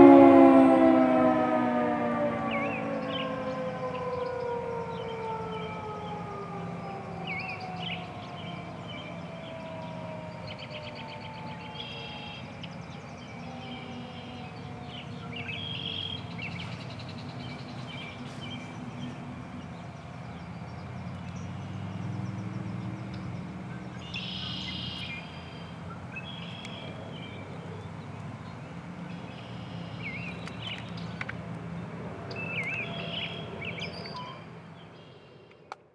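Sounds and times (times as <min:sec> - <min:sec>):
siren falling tones: 0:00.0 - 0:12.5
birds chirping: 0:02.4 - 0:35.8
steady low rumble: 0:12.7 - 0:24.0.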